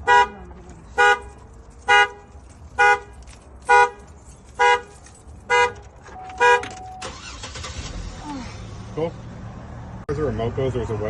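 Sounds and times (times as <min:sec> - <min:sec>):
car horn honking: 0:00.0 - 0:07.7.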